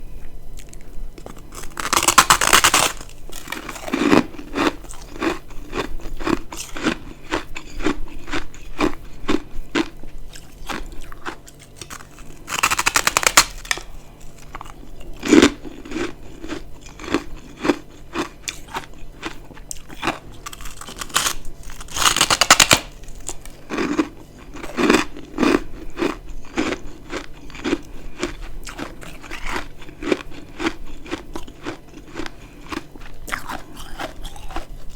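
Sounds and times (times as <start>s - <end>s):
person chewing ice: 0.2s - 34.9s
crunching bites of ice: 0.6s - 34.8s.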